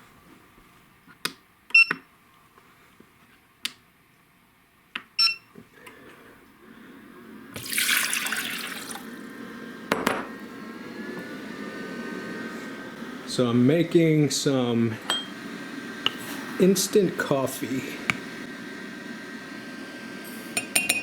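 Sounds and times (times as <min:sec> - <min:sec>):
water poured into pot: 0:07.6 - 0:09.3.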